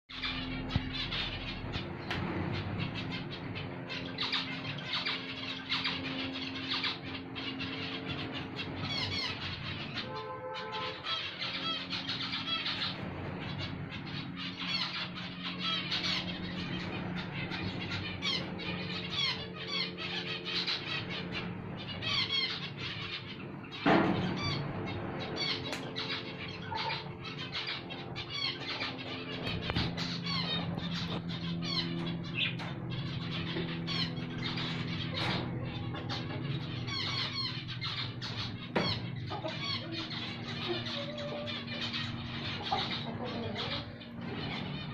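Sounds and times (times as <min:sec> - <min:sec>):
small birds chirping: 0:00.1 - 0:44.9.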